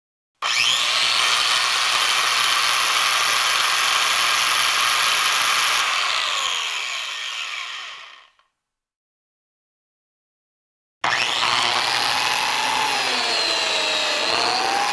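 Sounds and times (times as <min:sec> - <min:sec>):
electric jointer whining: 0:00.4 - 0:08.4, 0:11.0 - 0:14.9.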